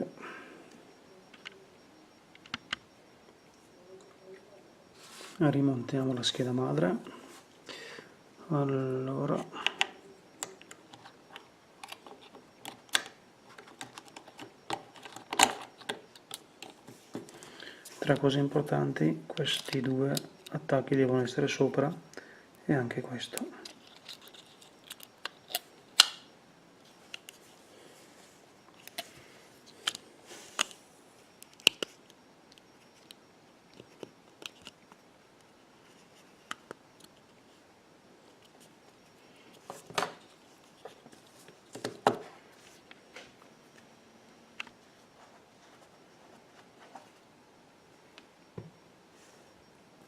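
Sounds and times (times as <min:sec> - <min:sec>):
tools and parts clicking: 0:23.6 - 0:26.2.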